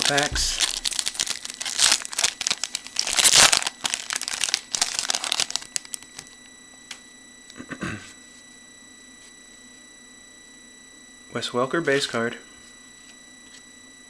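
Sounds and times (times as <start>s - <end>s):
card pack wrapper tearing and crinkling: 0.0s - 6.3s.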